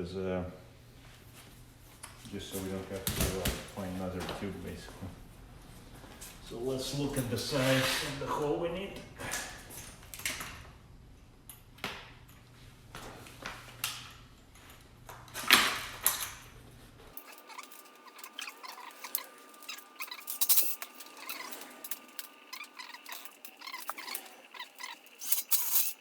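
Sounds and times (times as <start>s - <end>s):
low background hum: 8.2s - 26.0s
tools clicking and rattling: 17.2s - 26.0s.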